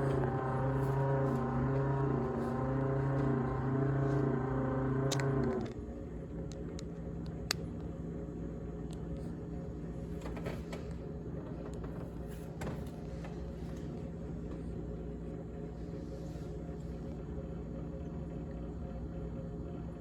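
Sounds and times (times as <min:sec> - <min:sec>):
refrigerator fan buzzing rattle: 0:00.0 - 0:20.0
refrigerator hum: 0:00.0 - 0:20.0.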